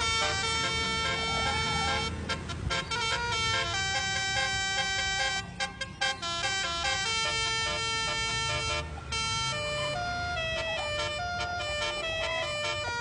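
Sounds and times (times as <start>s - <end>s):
bus horn playing a melody: 0.0s - 13.0s.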